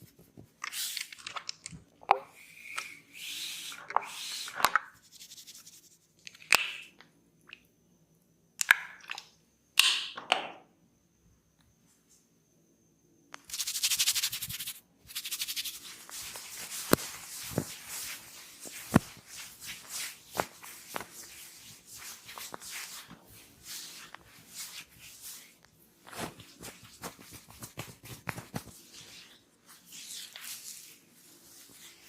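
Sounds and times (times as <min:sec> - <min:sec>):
massage rubbing and crackling: 0:13.6 - 0:32.0.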